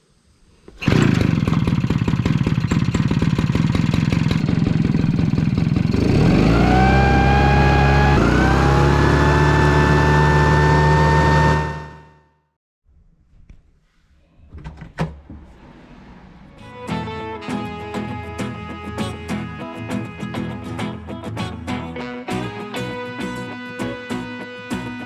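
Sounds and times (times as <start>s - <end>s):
two-stroke blower engine running: 0.8s - 12.2s
blower fan whine: 5.9s - 12.2s.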